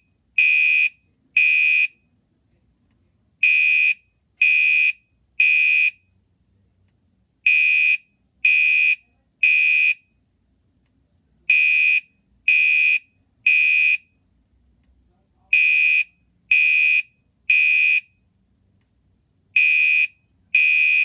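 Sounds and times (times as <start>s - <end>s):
fire alarm horn blasts: 0.4s - 2.0s, 3.4s - 6.0s, 7.5s - 10.0s, 11.5s - 14.1s, 15.5s - 18.1s, 19.6s - 21.0s.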